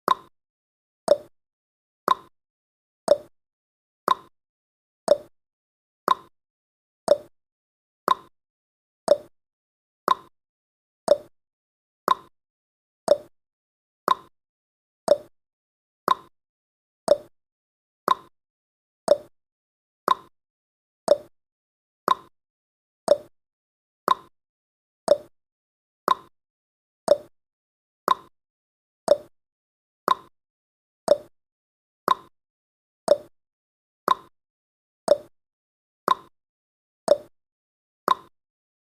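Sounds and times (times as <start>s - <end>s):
clock ticking: 1.1s - 1.3s, 3.1s - 3.3s, 5.1s - 5.3s, 7.1s - 7.3s, 9.1s - 9.3s, 11.1s - 11.3s, 13.1s - 13.3s, 15.1s - 15.3s, 19.1s - 19.3s, 21.1s - 21.3s, 29.1s - 29.3s, 31.1s - 31.3s, 33.1s - 33.3s, 35.1s - 35.3s, 37.1s - 37.3s.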